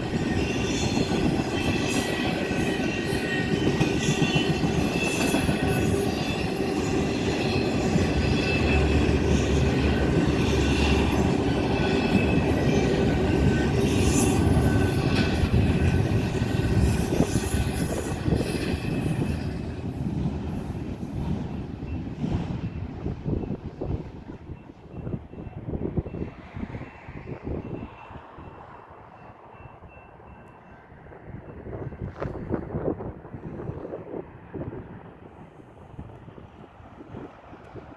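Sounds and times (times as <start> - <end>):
high wheel squeal: 0.0 - 22.1
train wheels rumbling on rail: 0.0 - 37.9.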